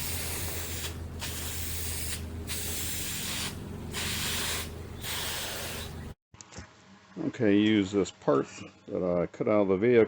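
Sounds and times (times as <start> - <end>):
paint spraying in bursts: 0.0 - 6.2
steady low hum: 0.0 - 9.8.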